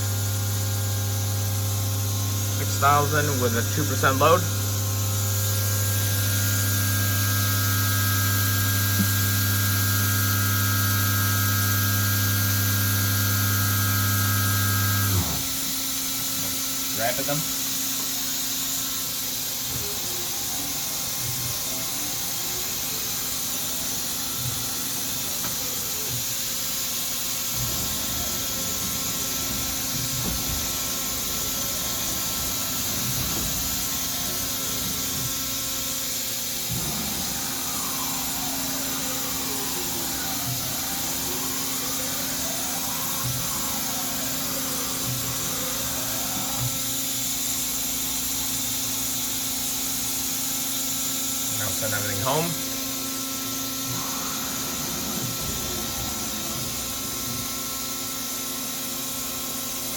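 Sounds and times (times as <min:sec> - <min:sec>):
servo motors whining: 0:00.0 - 0:15.7, 0:27.4 - 0:49.2, 0:51.6 - 0:59.6
machine hum and hiss: 0:00.0 - 0:59.9.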